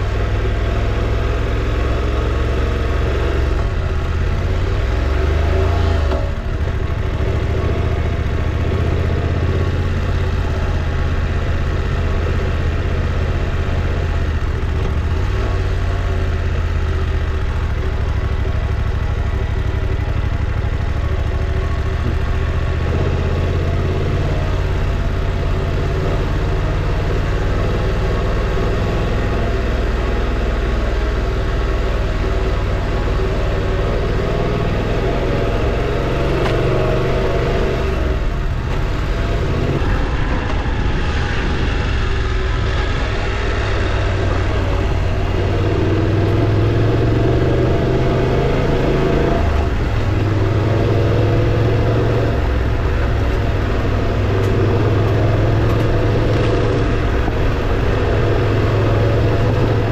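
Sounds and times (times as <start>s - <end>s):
motorcycle engine running: 0.0s - 59.9s
wind rushing: 38.6s - 45.2s.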